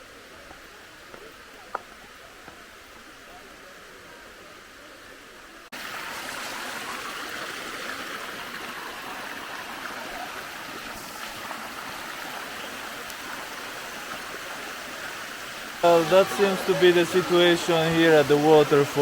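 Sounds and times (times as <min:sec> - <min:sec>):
waterfall rushing and splashing: 0:05.8 - 0:19.0.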